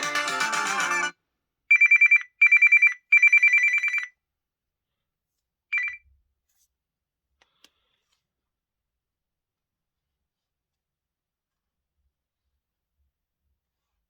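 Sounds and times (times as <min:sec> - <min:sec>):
high electronic ringtone trill: 0:00.0 - 0:01.1
musical ringtone: 0:00.0 - 0:01.1.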